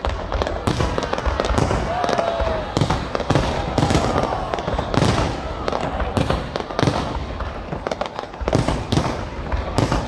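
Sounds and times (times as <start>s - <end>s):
firework shells booming: 0.0s - 10.0s
fireworks rumble and crackle: 0.0s - 10.0s.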